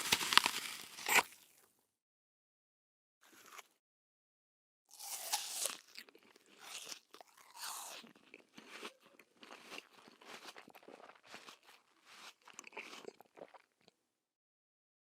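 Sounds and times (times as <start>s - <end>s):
person chewing crunchy food: 0.0s - 1.6s, 3.2s - 3.8s, 4.9s - 14.1s.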